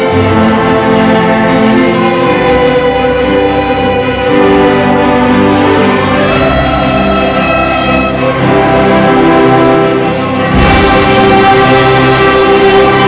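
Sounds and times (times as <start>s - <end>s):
orchestra and band playing: 0.0s - 13.0s.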